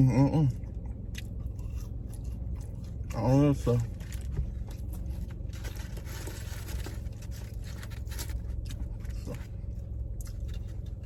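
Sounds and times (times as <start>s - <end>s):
low hum: 0.0s - 11.0s
chewing and mouth smacking: 0.5s - 3.2s, 7.8s - 11.0s.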